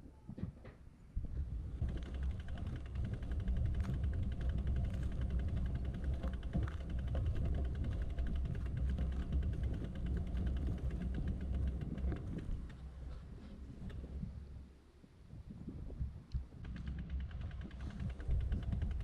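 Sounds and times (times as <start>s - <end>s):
wind and road noise: 0.0s - 19.0s
rapid even ticking: 1.8s - 12.8s, 16.6s - 19.0s.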